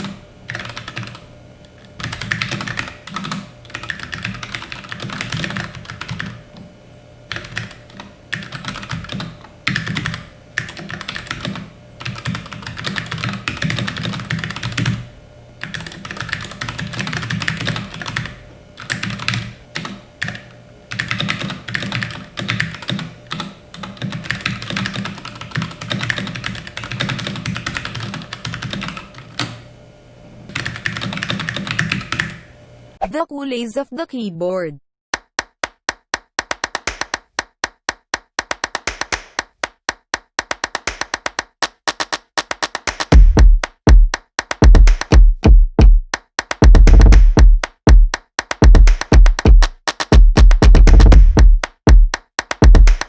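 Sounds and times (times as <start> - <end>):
mechanical keyboard typing: 0.0 - 1.2, 2.0 - 6.4, 7.3 - 15.0, 15.6 - 29.6, 30.5 - 32.4, 35.2 - 45.2, 46.2 - 53.0.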